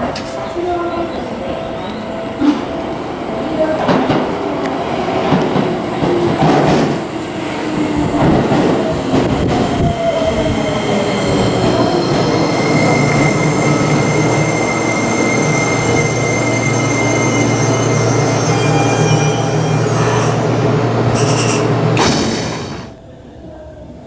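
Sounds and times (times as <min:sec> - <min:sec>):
falling motor whine: 0:11.6 - 0:23.0
high-pitched brake squeal: 0:11.8 - 0:22.9.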